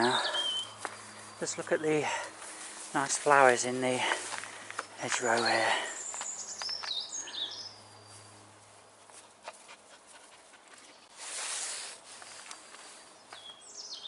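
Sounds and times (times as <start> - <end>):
songbird singing: 0.0 - 9.3, 12.3 - 14.0
brief hiss of noise: 11.2 - 12.4.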